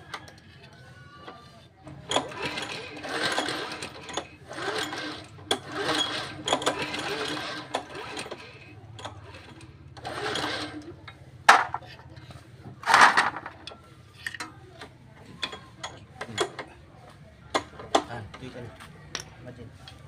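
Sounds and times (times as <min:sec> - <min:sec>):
single-cylinder engine running: 0:02.1 - 0:13.8
clicks and knocks: 0:11.5 - 0:12.0.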